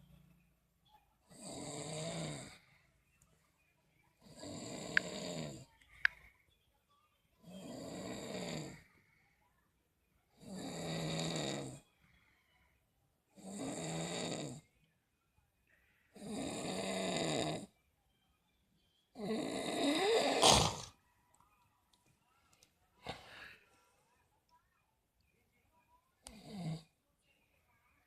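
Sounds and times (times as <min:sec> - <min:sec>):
snoring: 0:01.3 - 0:02.7, 0:04.2 - 0:05.7, 0:07.4 - 0:08.8, 0:10.4 - 0:11.8, 0:13.4 - 0:14.7, 0:16.1 - 0:17.8, 0:19.2 - 0:21.0, 0:26.3 - 0:26.9.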